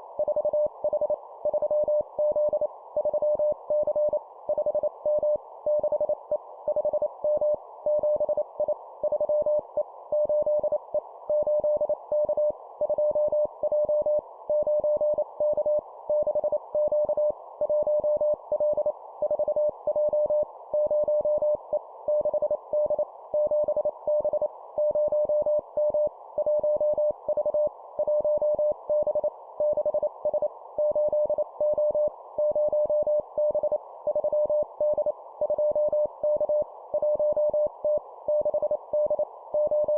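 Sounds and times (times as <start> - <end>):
morse code beeps: 11.4 - 39.9.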